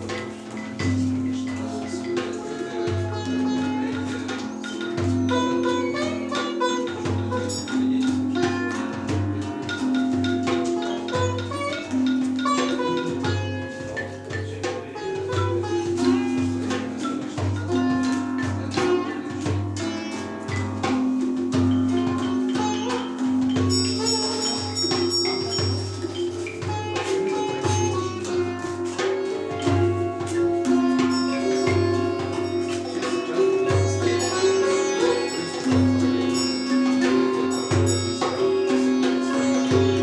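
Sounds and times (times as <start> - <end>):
djembe hand drum strokes: 0.0 - 40.0
sitar: 0.0 - 40.0
high ringing tones: 21.8 - 27.5, 31.0 - 40.0.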